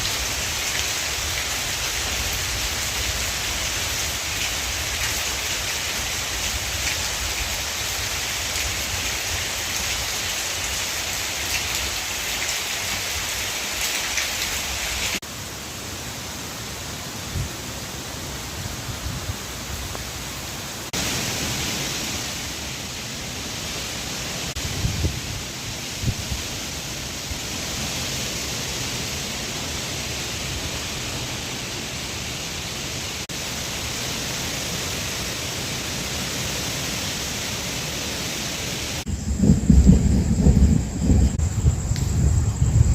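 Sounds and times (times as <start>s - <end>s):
heavy rain falling: 0.0s - 42.9s
wind thumps on microphone: 39.1s - 42.9s.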